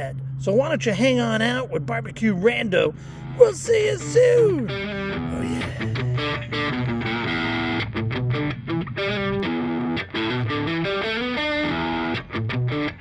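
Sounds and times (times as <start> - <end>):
distorted electric guitar riff: 2.9 - 13.0.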